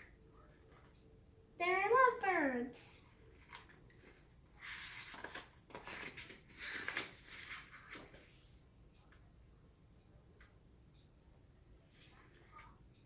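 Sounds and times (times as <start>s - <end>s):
paper pages rustling and turning: 3.3s - 8.6s.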